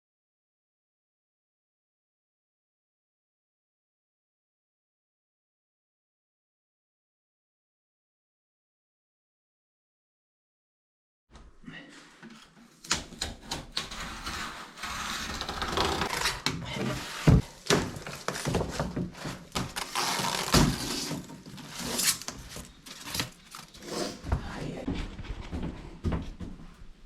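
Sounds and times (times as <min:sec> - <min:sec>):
objects scraping: 0:11.7 - 0:26.0.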